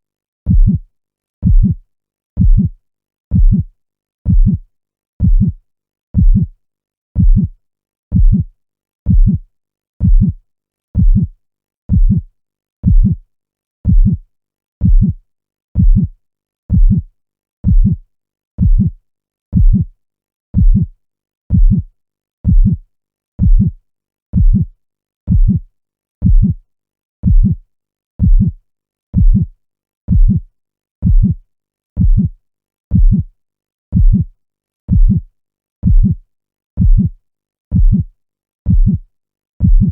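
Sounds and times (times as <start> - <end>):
heartbeat thumps: 0.5 - 0.8, 1.4 - 1.8, 2.4 - 2.7, 3.3 - 3.7, 4.3 - 4.6, 5.2 - 5.6, 6.2 - 6.5, 7.2 - 7.5, 8.1 - 8.5, 9.1 - 9.4, 10.0 - 10.4, 11.0 - 11.3, 11.9 - 12.2, 12.8 - 13.2, 13.9 - 14.2, 14.8 - 15.2, 15.8 - 16.1, 16.7 - 17.0, 17.6 - 18.0, 18.6 - 18.9, 19.6 - 19.9, 20.6 - 20.9, 21.5 - 21.8, 22.5 - 22.8, 23.4 - 23.8, 24.4 - 24.7, 25.3 - 25.6, 26.2 - 26.6, 27.2 - 27.6, 28.2 - 28.6, 29.2 - 29.5, 30.1 - 30.4, 31.0 - 31.4, 32.0 - 32.3, 32.9 - 33.3, 33.9 - 34.3, 34.9 - 35.2, 35.8 - 36.2, 36.8 - 37.1, 37.7 - 38.1, 38.7 - 39.0, 39.6 - 39.9.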